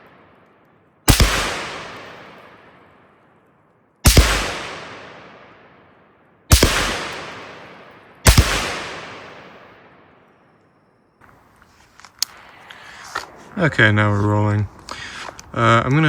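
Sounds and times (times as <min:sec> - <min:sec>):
rifle shots with echo: 0:00.0 - 0:11.2.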